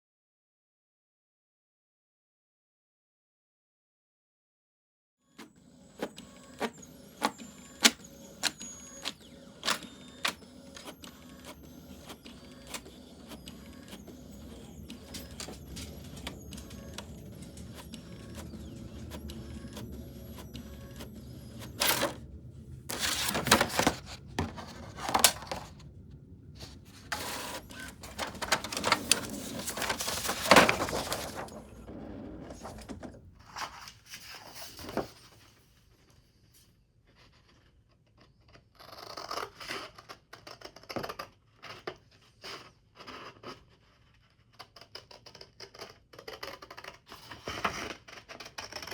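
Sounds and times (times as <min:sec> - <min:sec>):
low steady hum: 0:13.7 - 0:33.5
paper rustling and crinkling: 0:14.3 - 0:19.9, 0:21.4 - 0:35.4.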